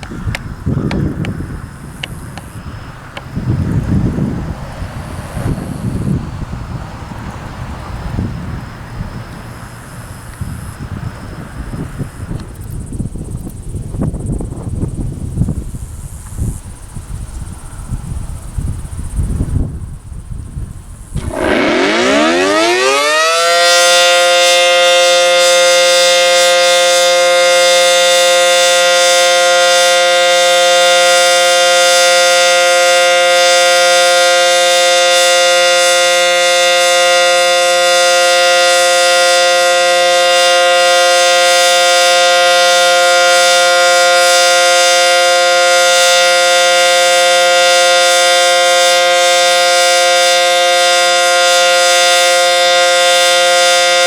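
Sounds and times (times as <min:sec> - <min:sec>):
warning siren winding up: 0:21.2 - 0:54.0.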